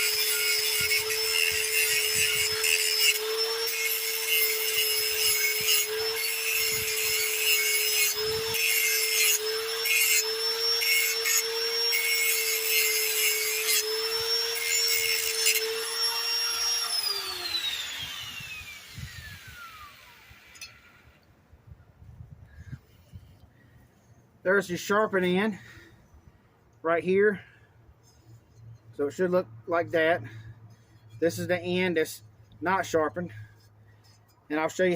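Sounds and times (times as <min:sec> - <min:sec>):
electric grinder grinding metal blade: 0:00.0 - 0:21.2.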